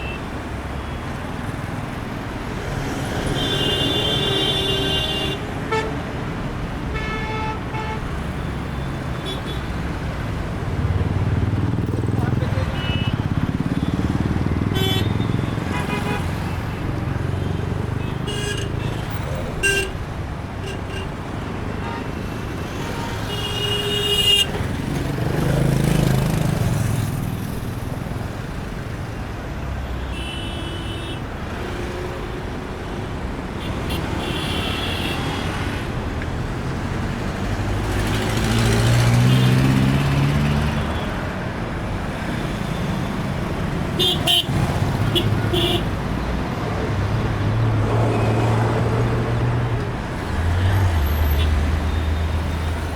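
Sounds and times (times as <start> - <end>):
traffic road noise: 0.0 - 52.9
vehicle passing close by: 36.6 - 40.9.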